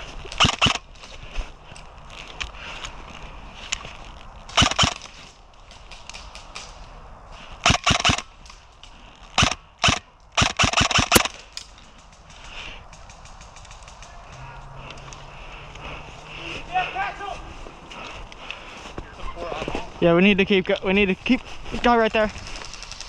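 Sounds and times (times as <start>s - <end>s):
airsoft guns firing: 0.4s - 0.8s, 4.5s - 5.2s, 7.6s - 8.3s, 9.4s - 14.4s.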